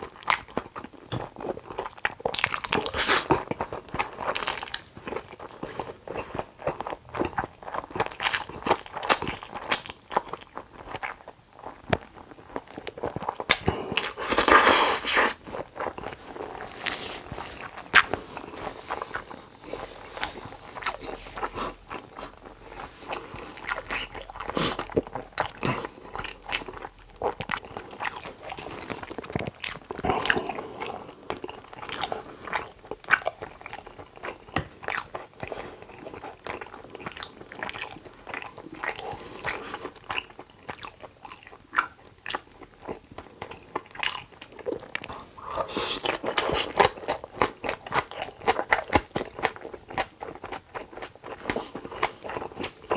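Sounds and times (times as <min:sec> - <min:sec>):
person biting and chewing food: 0:12.0 - 0:33.3, 0:44.0 - 0:52.9.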